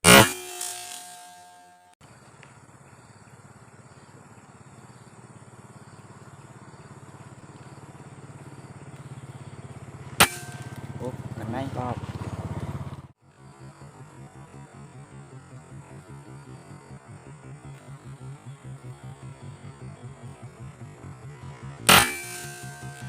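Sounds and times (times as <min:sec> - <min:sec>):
small motor pulsing: 0:00.0 - 0:01.9, 0:03.3 - 0:23.0
air rifle shot: 0:21.9 - 0:23.0.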